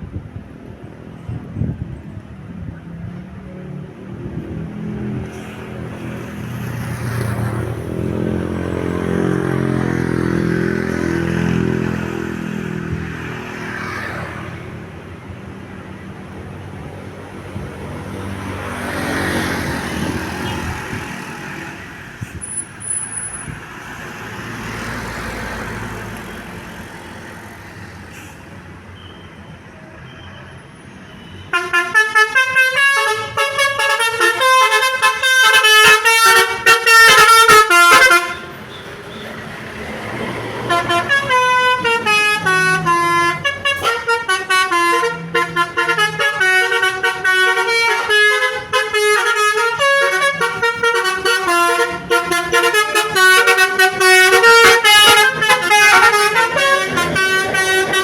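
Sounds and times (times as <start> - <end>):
heavy vehicles passing: 0.0 - 30.0, 30.6 - 58.0
bus horn playing melody: 31.5 - 39.2, 40.6 - 58.0.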